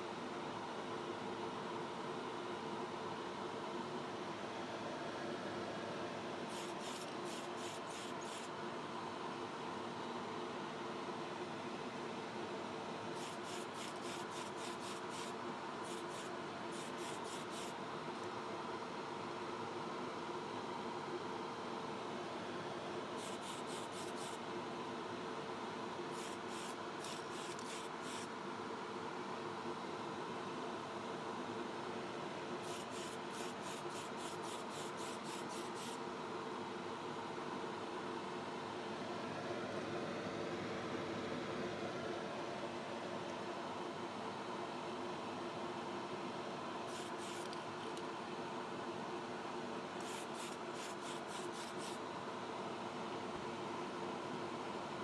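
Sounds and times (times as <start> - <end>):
spray booth fan hum: 5.4 - 8.5, 13.0 - 18.3, 22.4 - 24.8, 26.0 - 28.4, 32.4 - 36.1, 46.8 - 48.0, 49.9 - 52.2
spray-paint bursts: 6.5 - 8.5, 13.2 - 17.8, 23.2 - 24.4, 26.1 - 28.3, 32.6 - 36.0, 46.9 - 47.5, 50.0 - 52.0.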